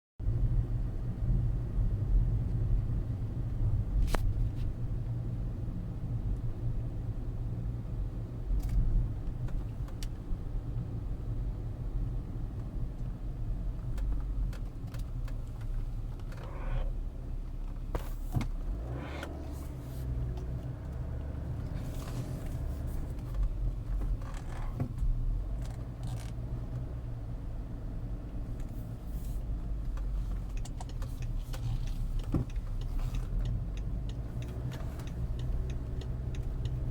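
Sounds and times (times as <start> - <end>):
low pulsating drivetrain hum: 8.6 - 36.9.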